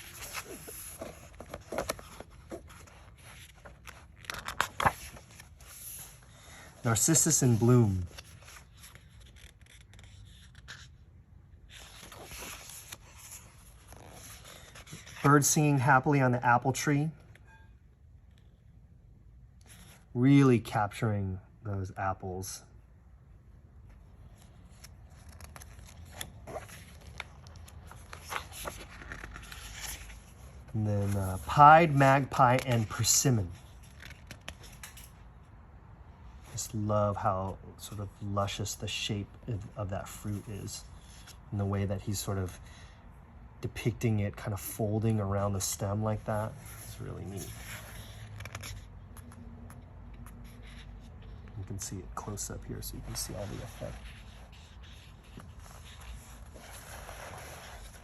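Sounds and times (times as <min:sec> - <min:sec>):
book pages turning: 0:00.0 - 0:15.7, 0:23.8 - 0:35.0, 0:44.4 - 0:58.0
paper scrapes and soft taps: 0:52.3 - 0:58.0.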